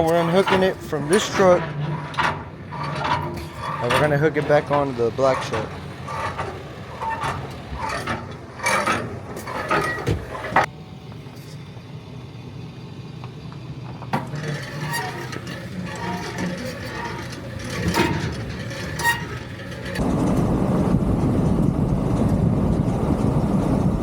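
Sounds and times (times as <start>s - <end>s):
metal clanks of trailer hitch: 0.0s - 10.7s, 14.1s - 20.0s.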